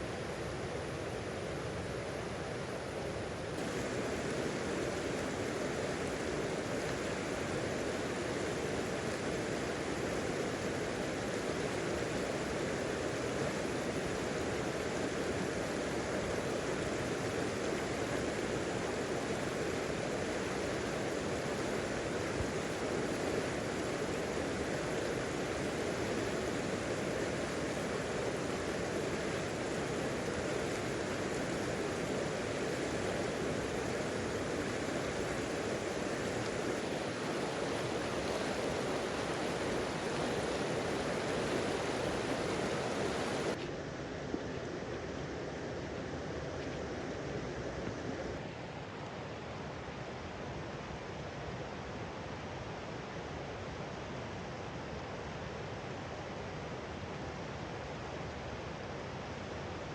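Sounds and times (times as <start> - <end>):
rushing river water: 0.1 - 44.0.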